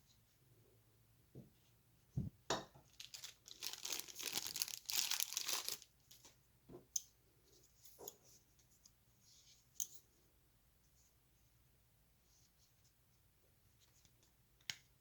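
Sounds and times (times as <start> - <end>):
packaging crinkling and tearing: 2.9 - 5.9.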